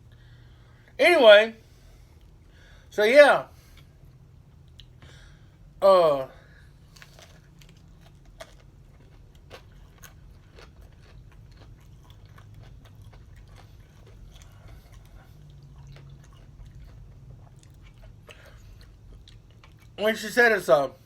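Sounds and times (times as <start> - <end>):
low steady hum: 0.0 - 21.0
person chewing food: 3.6 - 5.4, 6.5 - 20.0.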